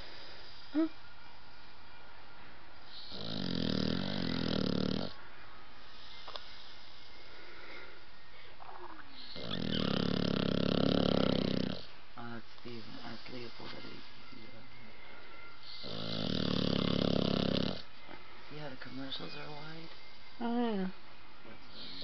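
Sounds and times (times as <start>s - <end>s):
puppy snoring: 2.9s - 5.2s, 8.6s - 11.9s, 15.6s - 17.9s, 21.7s - 22.0s.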